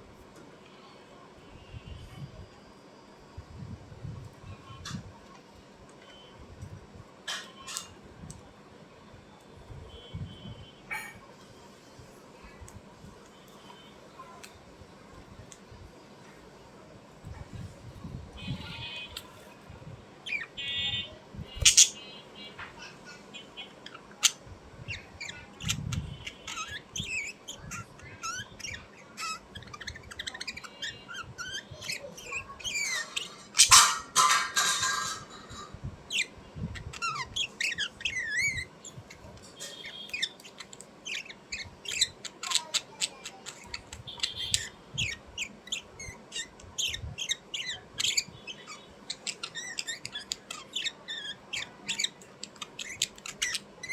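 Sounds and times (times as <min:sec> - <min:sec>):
birds chirping and squawking: 0:20.2 - 0:53.9.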